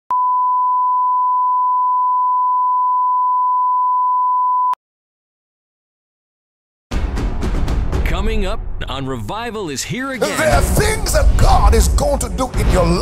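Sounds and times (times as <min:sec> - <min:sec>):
pure test tone beep: 0:00.1 - 0:04.8.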